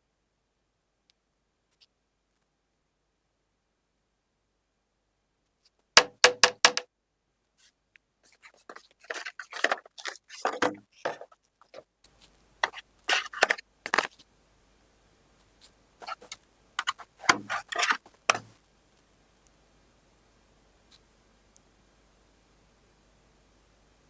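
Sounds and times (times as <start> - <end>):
box handling scrapes and knocks: 8.7 - 11.3, 12.6 - 14.1, 16.0 - 18.6.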